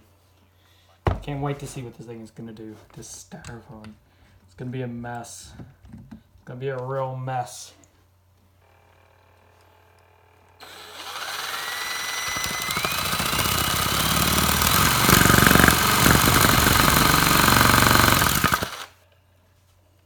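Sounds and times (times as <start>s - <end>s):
electric drill motor whine: 10.6s - 18.9s.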